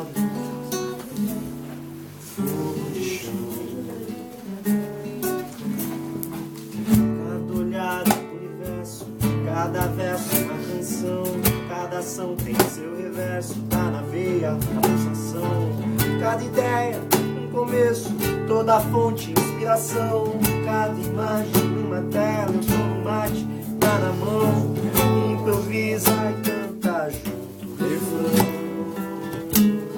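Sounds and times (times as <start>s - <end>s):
acoustic guitar strummed and plucked: 0.0s - 29.9s.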